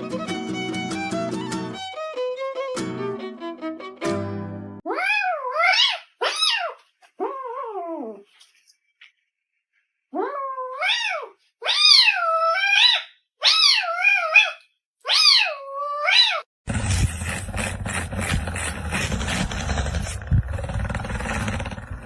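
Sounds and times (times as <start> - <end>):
cat meowing: 4.9 - 8.1, 10.1 - 16.5.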